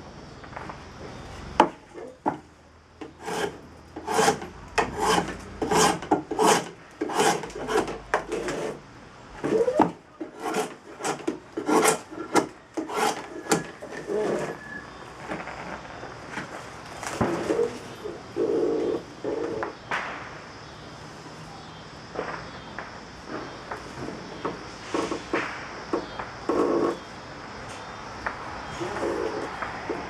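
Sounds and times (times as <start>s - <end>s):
drawknife scraping wood: 3.0s - 8.8s, 9.4s - 14.7s.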